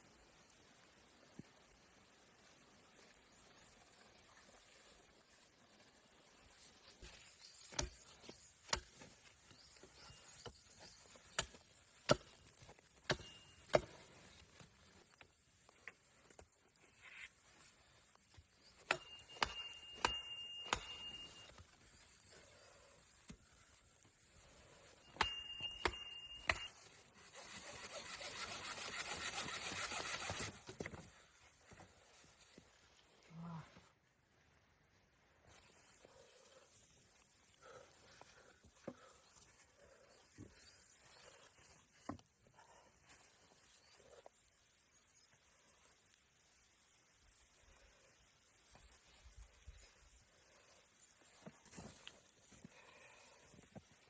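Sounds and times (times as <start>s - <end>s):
sharp chopping strikes: 13.0s - 14.0s, 18.8s - 21.4s, 25.1s - 26.7s.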